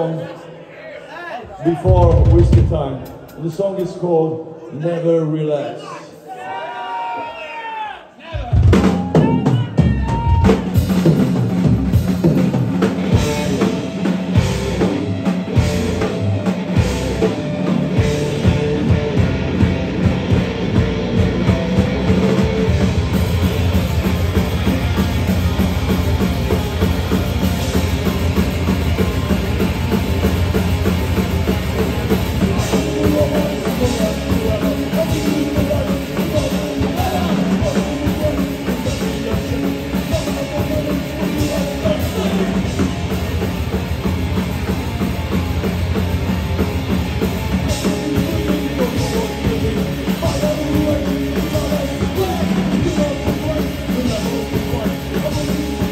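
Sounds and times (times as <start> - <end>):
rock band playing live: 1.7 - 4.2, 8.4 - 55.9.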